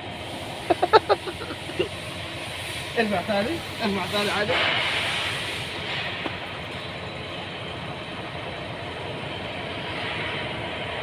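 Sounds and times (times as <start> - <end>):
steady hiss: 0.0 - 7.7
car engine idling: 0.0 - 9.5.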